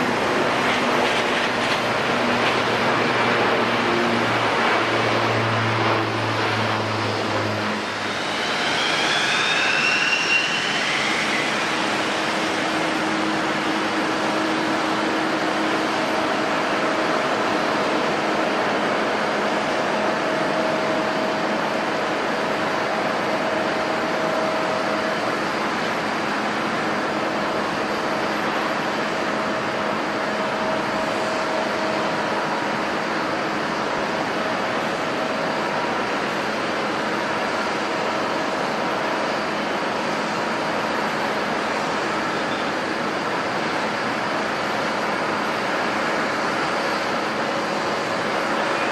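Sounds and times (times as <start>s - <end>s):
jet airliner engines running: 0.0s - 48.9s.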